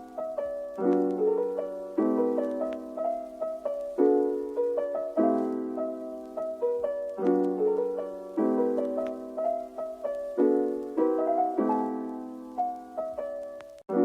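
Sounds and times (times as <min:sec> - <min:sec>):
soft piano music: 0:00.0 - 0:14.0.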